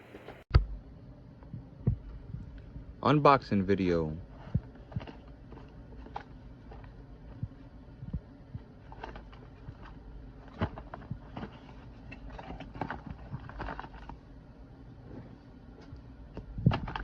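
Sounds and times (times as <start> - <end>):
box packaging handled and opened: 8.6 - 14.2.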